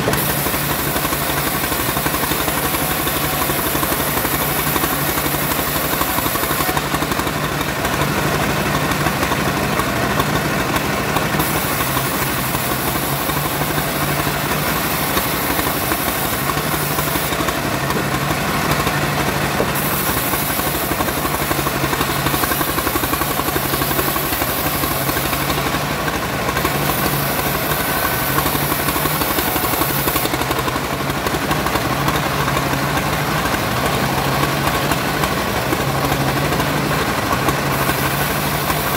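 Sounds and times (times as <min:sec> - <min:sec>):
bandsaw motor droning: 0:00.0 - 0:38.9.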